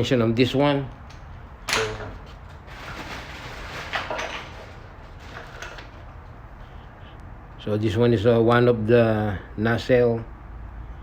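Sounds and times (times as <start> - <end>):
packaging rustling: 2.2 - 6.1.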